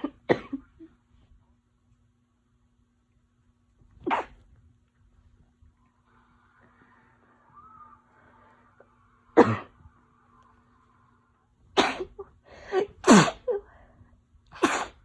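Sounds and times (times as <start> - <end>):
woman sneezing: 11.8 - 13.7, 14.6 - 15.0.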